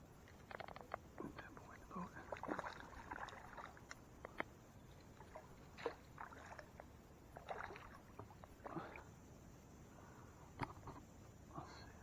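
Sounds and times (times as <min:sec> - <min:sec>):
quiet hiss: 0:00.0 - 0:12.0
faint water splashes: 0:01.2 - 0:09.2.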